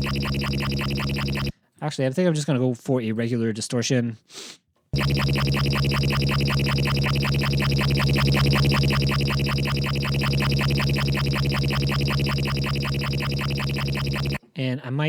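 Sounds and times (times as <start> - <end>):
synthesized engine hum: 0.0 - 1.5, 5.0 - 14.4.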